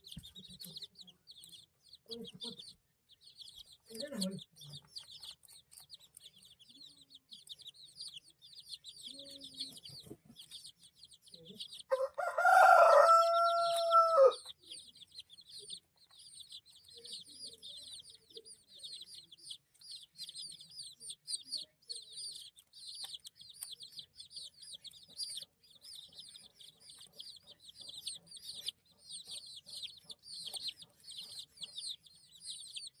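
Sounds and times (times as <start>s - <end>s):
baby chicks peeping: 0.0s - 33.0s
rooster crowing: 11.9s - 14.5s.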